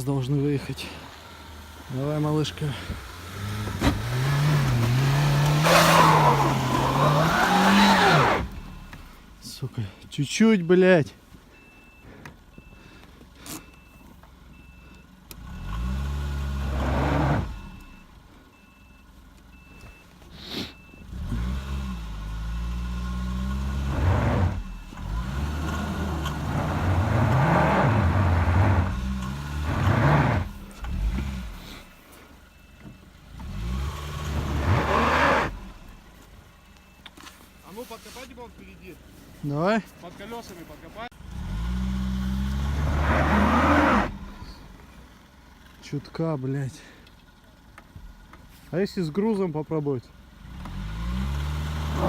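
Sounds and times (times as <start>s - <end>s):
car engine revving: 1.3s - 9.4s, 15.3s - 18.0s, 21.0s - 31.9s, 33.3s - 36.1s, 41.1s - 44.8s, 50.4s - 52.0s.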